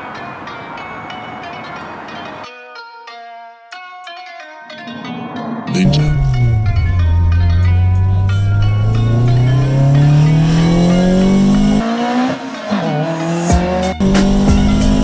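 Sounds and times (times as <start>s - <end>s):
car engine revving: 5.8s - 15.0s
music with a beat: 5.8s - 15.0s.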